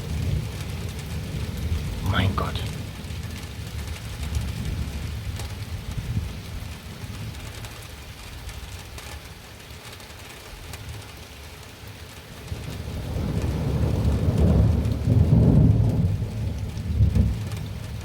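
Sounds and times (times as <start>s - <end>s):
thunder rumbling: 0.0s - 7.4s, 12.4s - 18.0s
steady rain falling: 0.0s - 18.0s.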